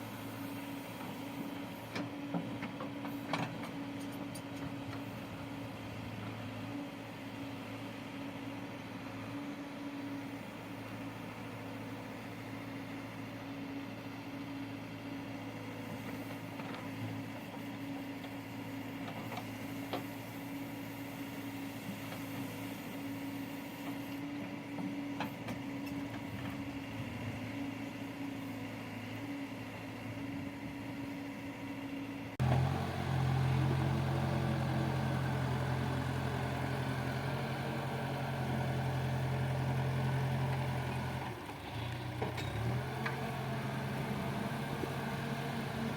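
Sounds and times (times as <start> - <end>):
heavy diesel engines running: 28.5 - 45.9.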